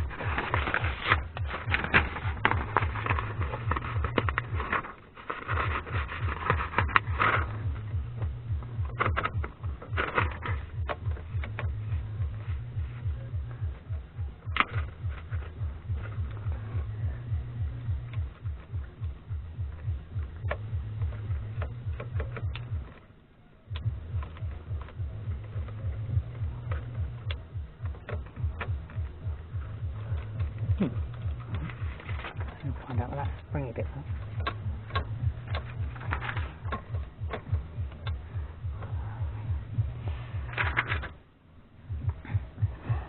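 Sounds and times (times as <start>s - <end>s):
low rhythmic throb: 0.0s - 43.0s.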